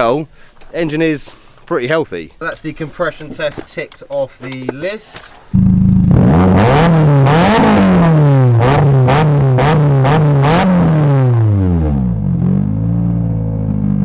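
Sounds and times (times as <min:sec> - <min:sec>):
car engine revving: 0:05.5 - 0:14.0.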